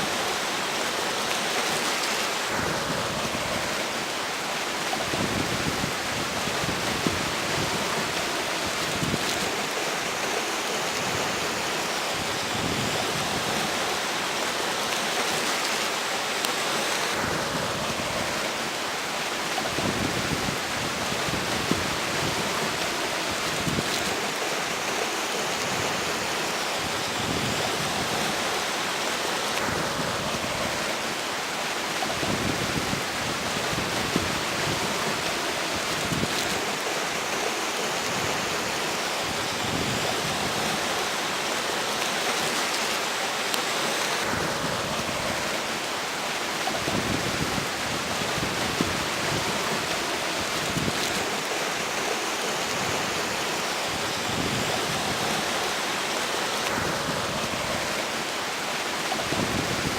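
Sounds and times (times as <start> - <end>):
river flowing: 0.0 - 59.9
wind buffeting microphone: 5.0 - 9.6, 19.6 - 24.3, 32.0 - 36.8, 46.6 - 51.4, 59.1 - 59.9.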